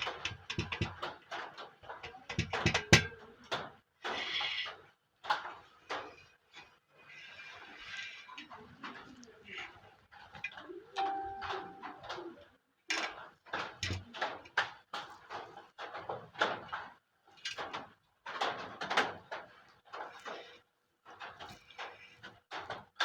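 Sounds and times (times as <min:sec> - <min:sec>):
cord rustling and scraping in track: 0:13.6 - 0:23.0.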